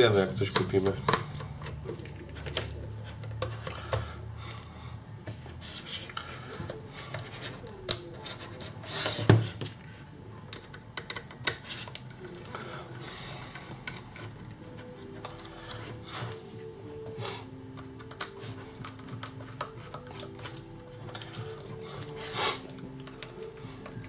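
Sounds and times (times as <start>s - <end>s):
tools and plastic clicking: 10.5s - 12.6s, 13.6s - 16.6s, 17.7s - 24.0s.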